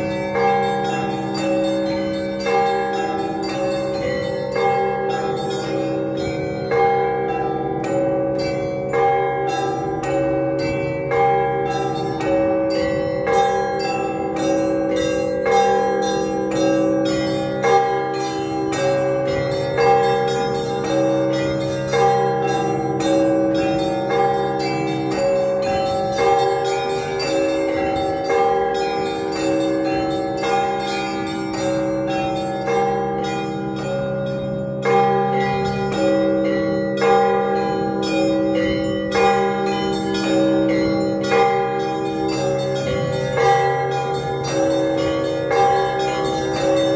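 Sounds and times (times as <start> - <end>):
church bells pealing: 0.0 - 46.9.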